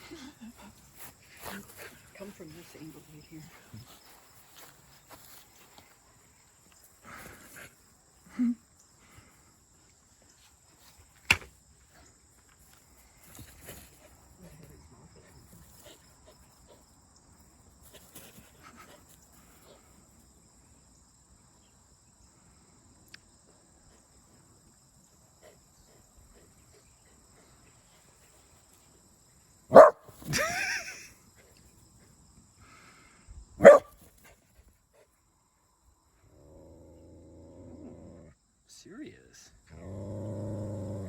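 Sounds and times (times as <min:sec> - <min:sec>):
dog barking: 0:29.7 - 0:30.1, 0:33.6 - 0:34.0.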